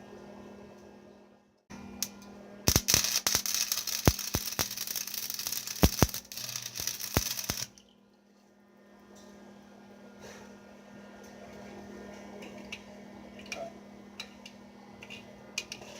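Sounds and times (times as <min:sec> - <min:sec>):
arc welder crackling and popping: 0:02.0 - 0:07.8.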